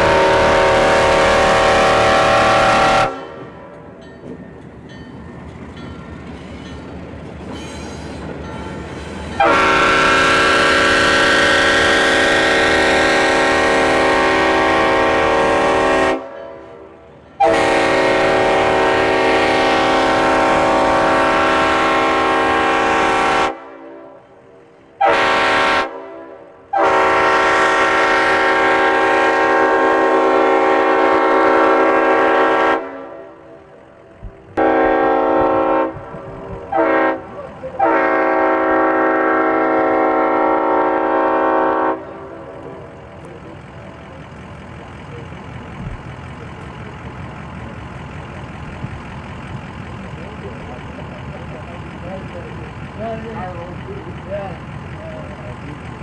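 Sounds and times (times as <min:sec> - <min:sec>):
railroad air horn blasts: 0:00.0 - 0:03.6, 0:09.4 - 0:24.2, 0:25.0 - 0:33.5, 0:34.6 - 0:42.9.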